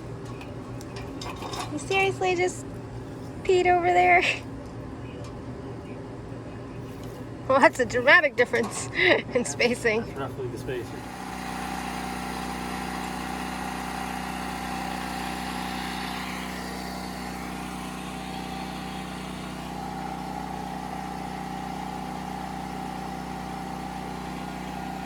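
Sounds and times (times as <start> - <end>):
generator engine humming: 0.0 - 25.0.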